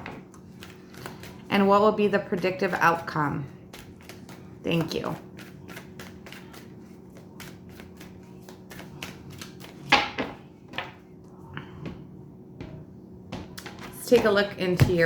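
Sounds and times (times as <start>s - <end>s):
cards being shuffled by hand: 0.3s - 1.5s, 3.5s - 9.9s.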